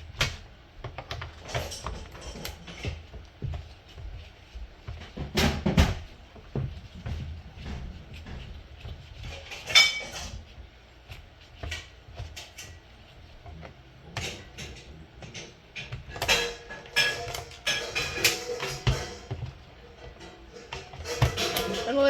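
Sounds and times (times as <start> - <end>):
tools clattering: 14.2 - 22.0.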